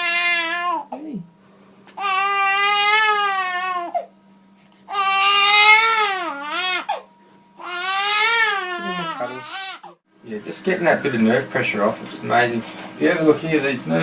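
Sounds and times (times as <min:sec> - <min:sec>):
infant crying: 0:00.0 - 0:01.1, 0:02.0 - 0:04.1, 0:04.9 - 0:10.0.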